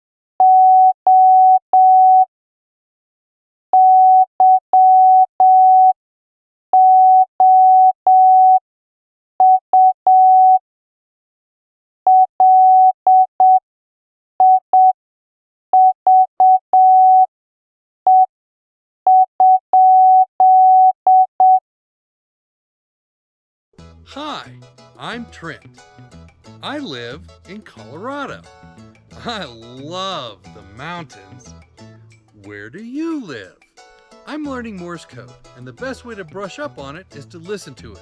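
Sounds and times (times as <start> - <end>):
morse code beeps: 0.4 - 2.3, 3.8 - 6.0, 6.8 - 8.6, 9.4 - 10.6, 12.1 - 13.6, 14.4 - 15.0, 15.8 - 17.3, 18.1 - 18.3, 19.1 - 21.6.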